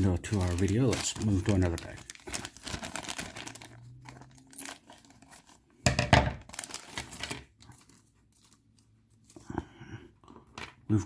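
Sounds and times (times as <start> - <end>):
plastic bags crinkling: 0.0 - 8.7.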